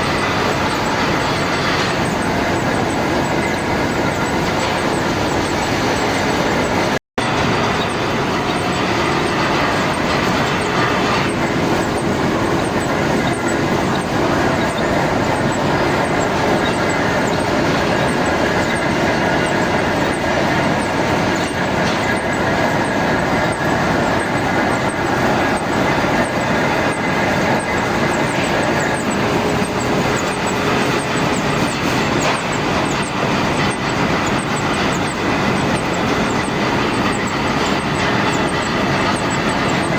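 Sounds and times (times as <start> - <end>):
machine tool running: 0.0 - 39.9.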